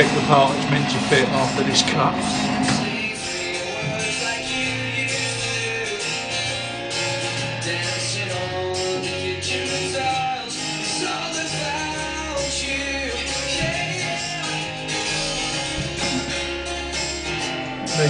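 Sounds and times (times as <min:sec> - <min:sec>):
steady beat: 0:00.0 - 0:06.9, 0:10.7 - 0:18.0
person singing: 0:00.0 - 0:18.0
strummed guitar: 0:00.0 - 0:18.0.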